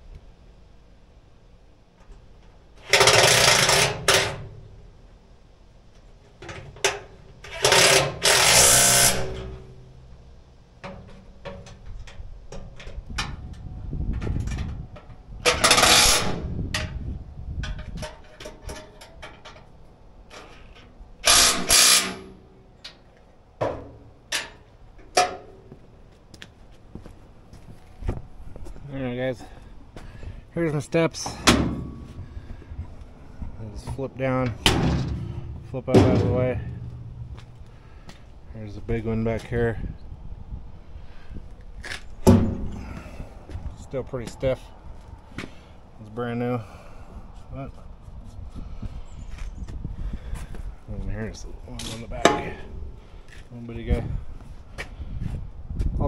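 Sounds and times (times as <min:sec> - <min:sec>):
power tool bursts: 0:02.9 - 0:04.2, 0:07.5 - 0:09.6, 0:15.5 - 0:16.4, 0:21.2 - 0:22.4
clicks and knocks of tools: 0:17.6 - 0:19.7.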